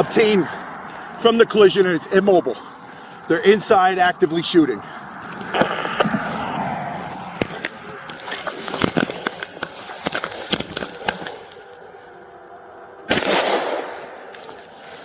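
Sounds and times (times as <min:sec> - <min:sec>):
gunshots: 0:13.1 - 0:14.3.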